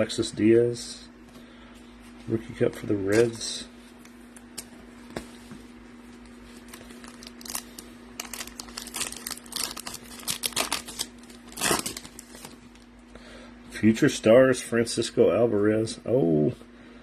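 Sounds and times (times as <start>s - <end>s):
low steady hum: 0.0s - 17.0s
foil wrapper crinkling and tearing: 6.6s - 12.9s.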